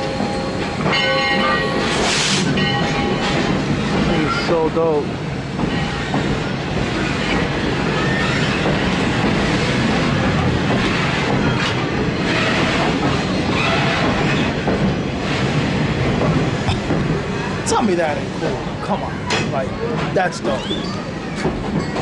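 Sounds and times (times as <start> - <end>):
steam train rolling past: 0.0 - 22.0
wheel squeal: 7.9 - 8.7, 20.5 - 21.1.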